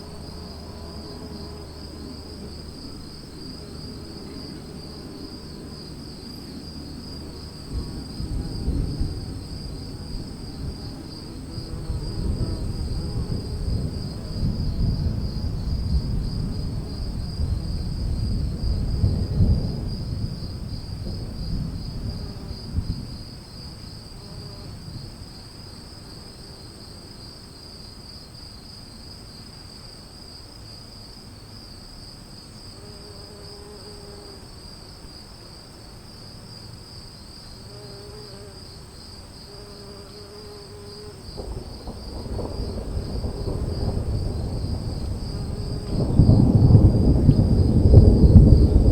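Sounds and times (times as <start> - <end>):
thunder rumbling: 0.0 - 25.3, 41.2 - 48.9
insects trilling: 0.0 - 48.9.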